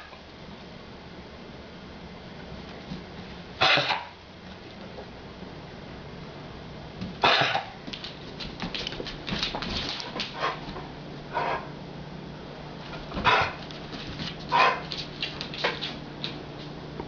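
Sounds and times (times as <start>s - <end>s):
dog coughing: 3.6s - 4.2s, 7.2s - 7.8s, 13.2s - 13.6s.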